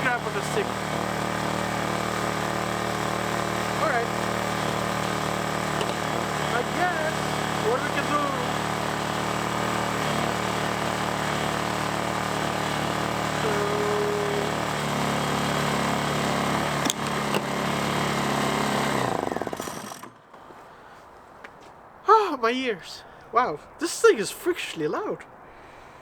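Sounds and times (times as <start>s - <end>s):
engine running down: 0.0s - 19.6s
generator engine running: 0.0s - 20.4s
clicks: 5.8s - 6.0s.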